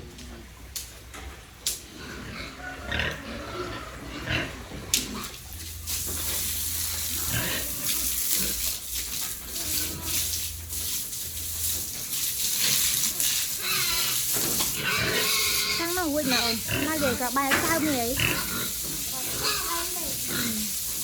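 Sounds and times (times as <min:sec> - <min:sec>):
pigs grunting: 0:01.8 - 0:05.7, 0:06.8 - 0:11.0, 0:12.5 - 0:21.0.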